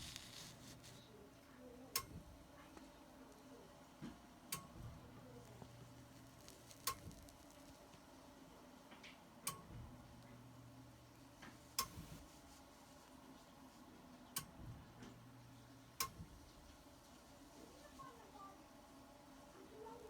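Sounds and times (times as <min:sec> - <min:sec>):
faint low hum: 0:00.0 - 0:08.7.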